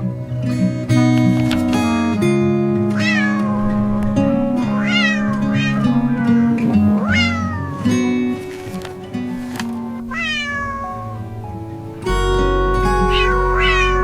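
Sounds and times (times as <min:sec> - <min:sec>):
soft background music: 0:00.0 - 0:14.0
cat meowing: 0:02.9 - 0:08.4, 0:10.1 - 0:11.4, 0:13.0 - 0:14.0.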